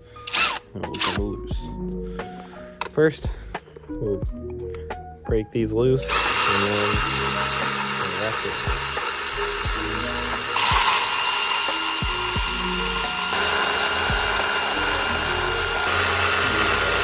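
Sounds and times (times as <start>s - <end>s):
electric ratchet wrench motor whirring: 0.2s - 1.3s, 6.0s - 17.0s.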